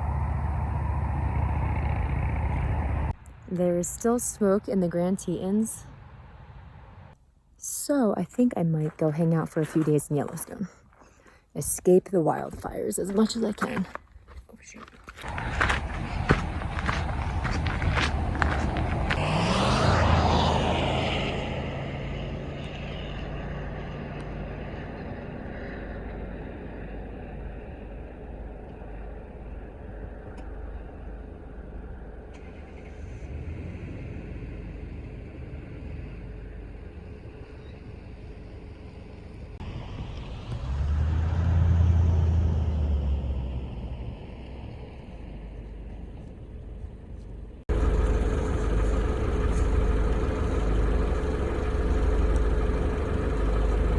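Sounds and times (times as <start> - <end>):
motor vehicle rumble: 0.0 - 53.9
engine swell: 15.2 - 42.0, 47.7 - 53.9.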